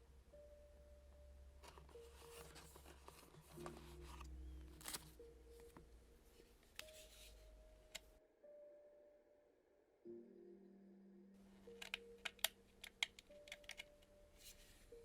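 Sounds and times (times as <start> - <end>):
soft background music: 0.0 - 15.0
packaging being handled: 1.6 - 5.8.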